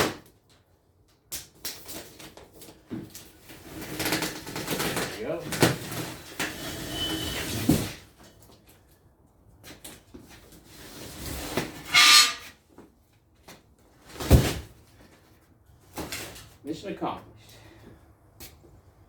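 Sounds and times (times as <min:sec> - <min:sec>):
heavy box scraping: 0:03.5 - 0:08.1.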